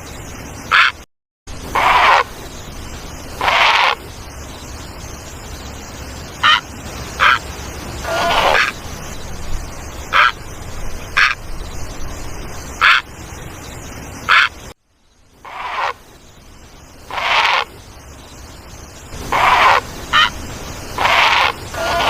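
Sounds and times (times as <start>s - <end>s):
egret calling: 0.7s - 1.0s, 1.7s - 2.4s, 3.3s - 4.1s, 6.3s - 9.1s, 10.0s - 11.5s, 12.7s - 13.1s, 14.2s - 14.7s, 15.4s - 16.0s, 17.0s - 17.8s, 19.2s - 22.0s.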